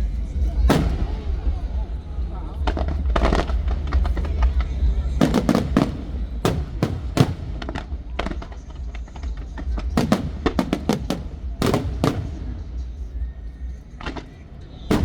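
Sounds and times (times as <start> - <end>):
fireworks bursting with sharp bangs: 0.2 - 15.0.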